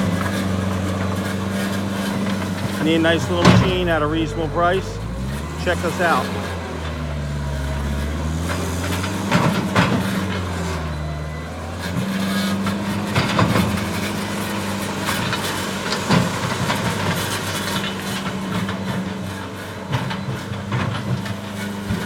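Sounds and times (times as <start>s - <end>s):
diesel engine running: 0.0s - 22.0s
sharp metallic knocks and clanks: 2.8s - 4.8s.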